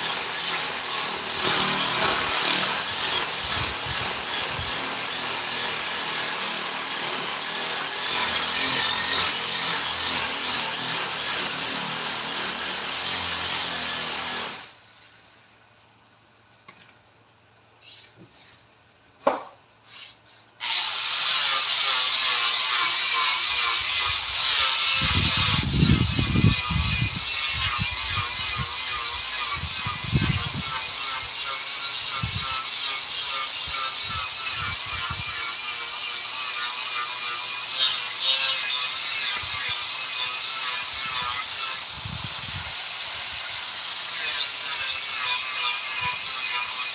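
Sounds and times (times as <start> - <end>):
power tool cutting wood: 0.0 - 14.8, 20.6 - 46.9
knocks: 19.2 - 19.6.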